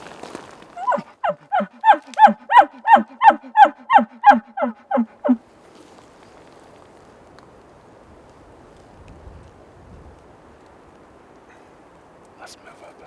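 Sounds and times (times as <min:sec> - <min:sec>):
bull elk grunting calls: 0:00.8 - 0:05.4.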